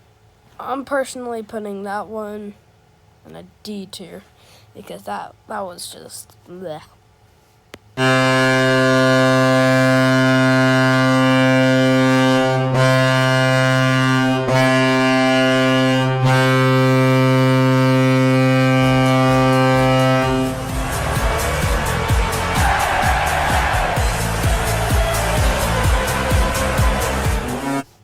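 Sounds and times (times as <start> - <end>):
deep arena goal horn blast: 8.0 - 27.9
goal song with a beat: 18.5 - 27.9
crowd noise: 19.8 - 27.8.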